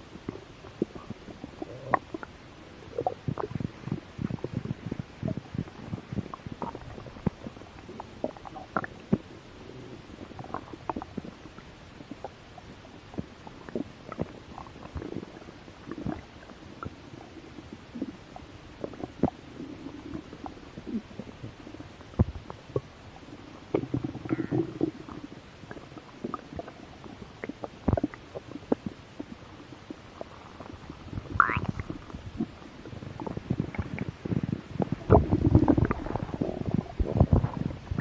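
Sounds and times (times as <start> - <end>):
stomach growling and gurgling: 0.0 - 38.0.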